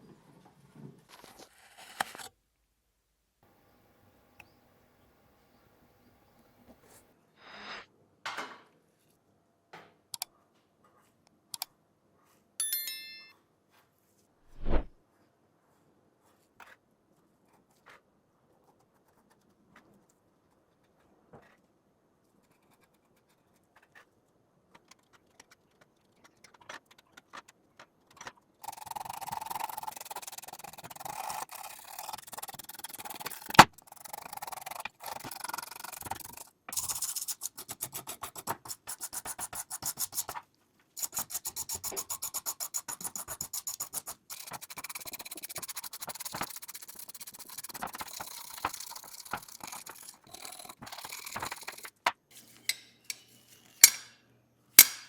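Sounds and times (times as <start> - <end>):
sanding strokes on small part: 28.6 - 40.4, 41.0 - 52.8.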